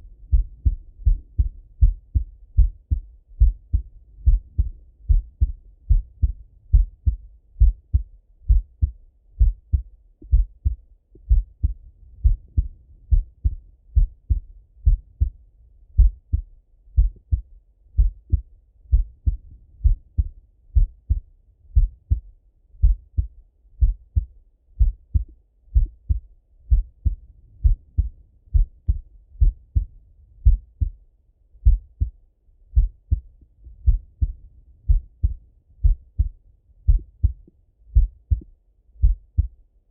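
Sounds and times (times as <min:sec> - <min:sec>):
heartbeat through stethoscope: 0:00.2 - 0:31.0, 0:31.6 - 0:39.6.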